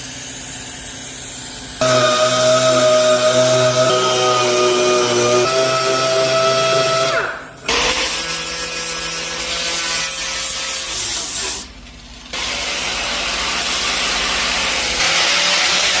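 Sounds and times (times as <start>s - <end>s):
power tool motor running: 1.8s - 9.7s.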